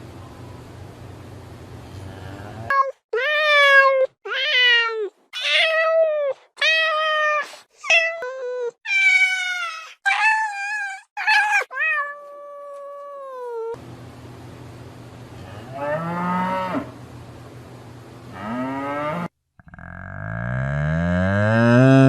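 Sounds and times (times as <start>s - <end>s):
cat meowing: 10.6s - 13.7s.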